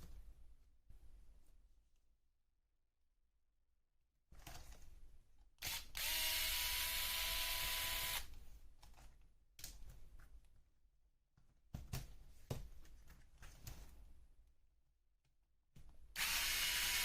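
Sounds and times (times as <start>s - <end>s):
electric screwdriver whirring: 5.6s - 8.3s, 16.2s - 17.0s.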